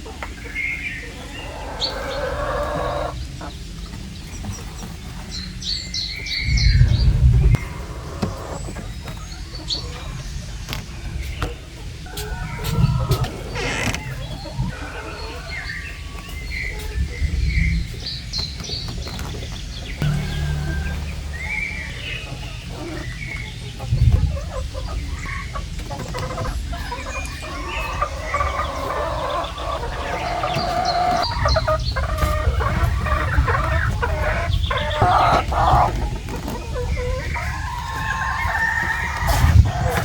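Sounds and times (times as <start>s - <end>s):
chickens clucking: 0.0s - 40.0s
low rumble: 6.3s - 8.1s, 20.0s - 24.8s
low thump: 20.0s - 22.4s
rooster crowing: 20.0s - 23.0s.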